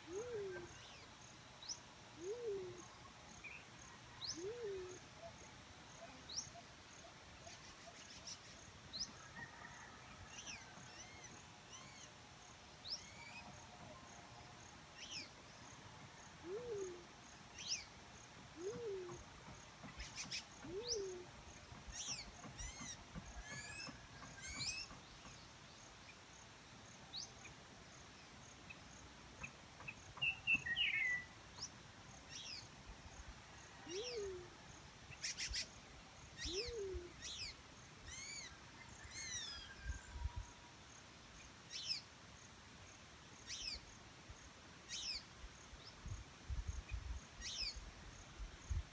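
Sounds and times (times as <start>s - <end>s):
dove low hoots: 0.0s - 0.9s, 2.2s - 2.9s, 4.2s - 5.4s, 16.4s - 17.1s, 18.6s - 19.3s, 20.6s - 21.4s, 33.8s - 34.6s, 36.4s - 37.3s.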